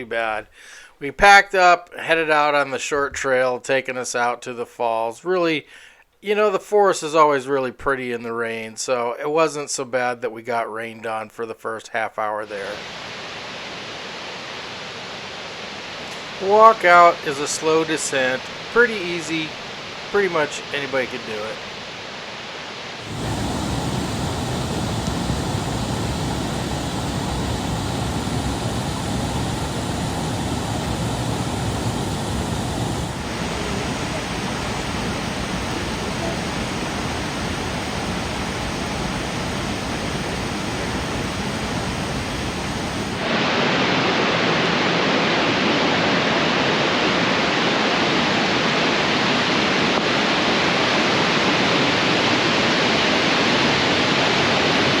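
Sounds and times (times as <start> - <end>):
waterfall rushing: 12.5 - 55.0.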